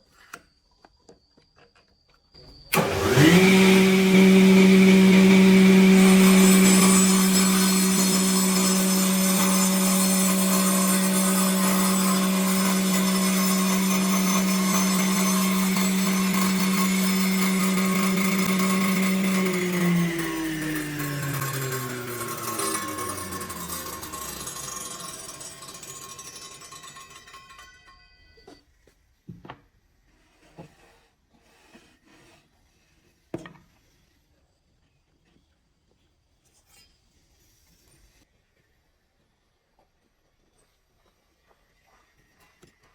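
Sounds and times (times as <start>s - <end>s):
circular saw sawing wood: 2.8s - 27.7s.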